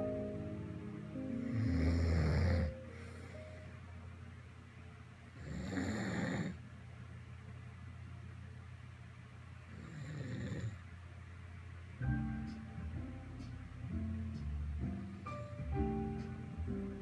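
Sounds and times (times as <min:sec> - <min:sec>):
person snoring: 0:01.4 - 0:02.8.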